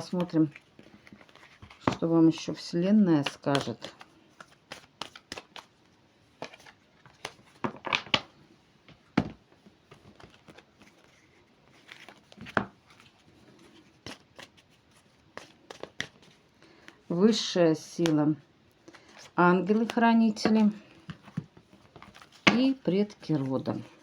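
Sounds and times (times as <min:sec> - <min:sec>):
cards shuffling and snapping: 0:03.2 - 0:05.8, 0:06.4 - 0:08.3, 0:09.9 - 0:17.0.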